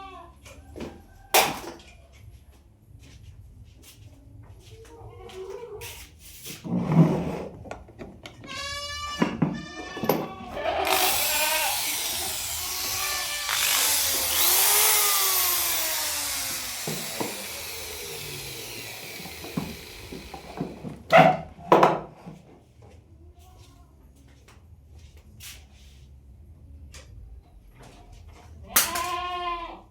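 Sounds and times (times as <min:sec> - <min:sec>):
wooden cable roller whirring rattle: 0:10.7 - 0:21.1.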